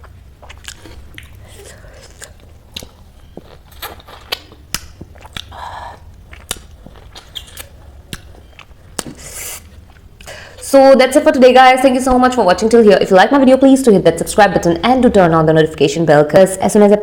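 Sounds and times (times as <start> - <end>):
mouth clicks and smacks chewing: 0.0 - 9.2.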